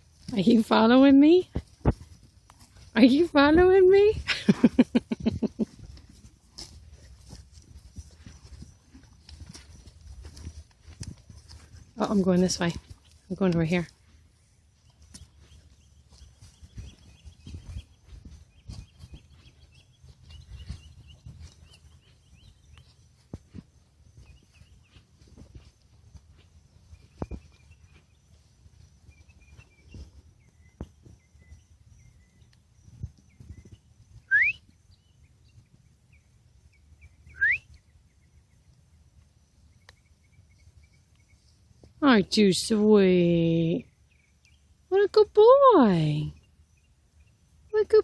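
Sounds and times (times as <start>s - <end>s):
footsteps on ground: 0.0s - 38.1s
small birds chirping: 0.0s - 48.0s.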